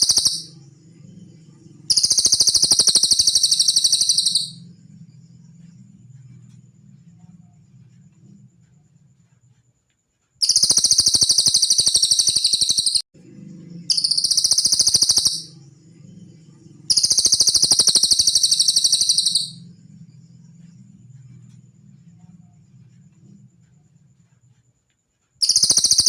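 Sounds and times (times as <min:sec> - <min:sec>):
songbird trilling: 0:00.0 - 0:00.6, 0:01.9 - 0:04.6, 0:10.4 - 0:13.0, 0:13.9 - 0:15.6, 0:16.9 - 0:19.6.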